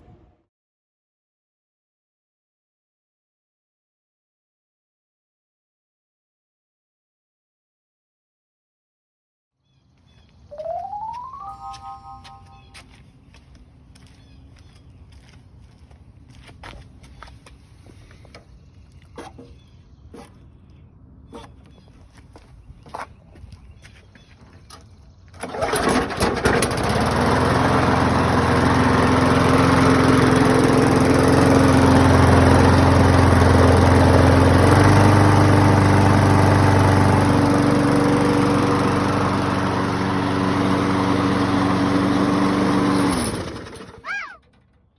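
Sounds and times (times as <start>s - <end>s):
lawn mower engine running: 24.6s - 44.9s.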